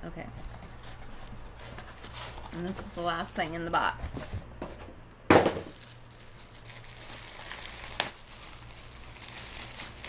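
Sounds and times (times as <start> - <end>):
packaging crinkling and rustling: 0.4 - 3.3, 5.4 - 10.0.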